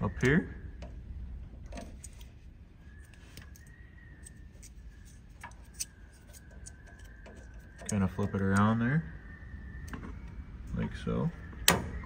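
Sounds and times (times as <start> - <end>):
faint high whine: 1.8 - 12.0.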